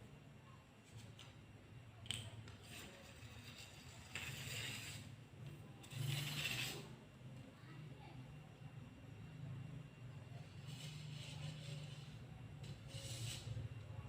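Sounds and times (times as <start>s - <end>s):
scraping: 2.6s - 5.2s, 5.8s - 6.9s, 10.5s - 13.6s.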